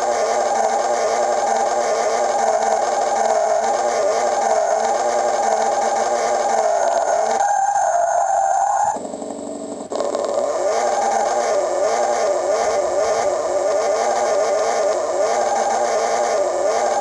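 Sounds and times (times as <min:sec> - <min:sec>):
synthetic tyre squeal: 0:00.0 - 0:09.0, 0:09.9 - 0:17.0
synthetic engine revving: 0:00.0 - 0:17.0.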